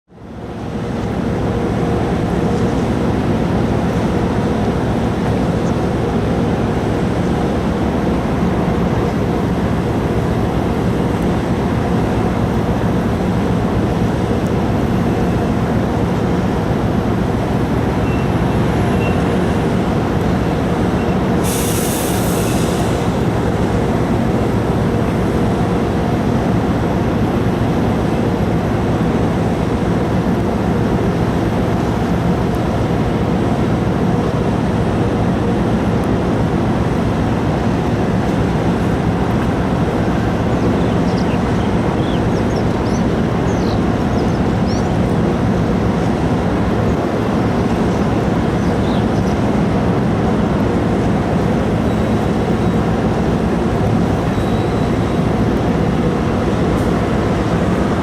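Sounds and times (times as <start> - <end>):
ship engines droning: 0.1 - 58.0
short hiss: 21.4 - 23.1.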